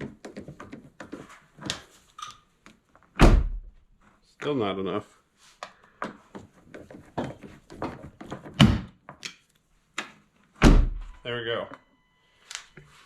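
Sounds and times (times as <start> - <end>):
door pushed shut thunk: 3.2 - 3.6, 10.6 - 11.1.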